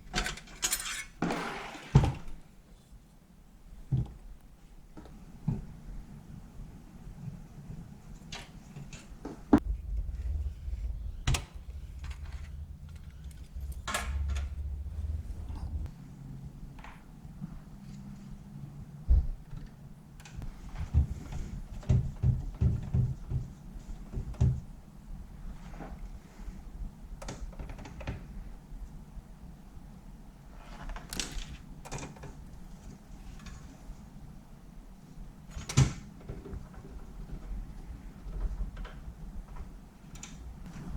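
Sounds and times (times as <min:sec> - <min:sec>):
rustling scrapes of handling parts: 0:00.4 - 0:02.0
low rumble: 0:09.6 - 0:16.2.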